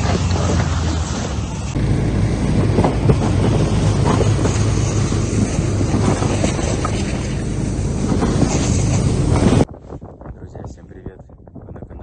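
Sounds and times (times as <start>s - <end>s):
vehicle drone: 0.0s - 9.8s
wind noise: 0.0s - 12.0s.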